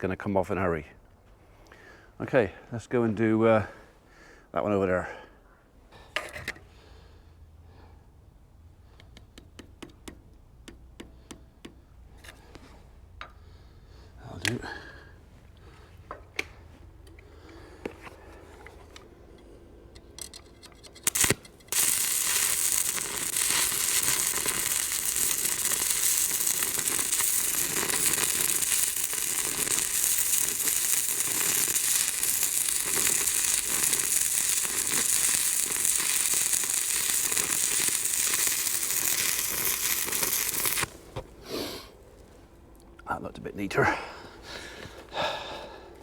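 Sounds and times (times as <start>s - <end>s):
arc welding crackle and sizzle: 20.8s - 41.3s.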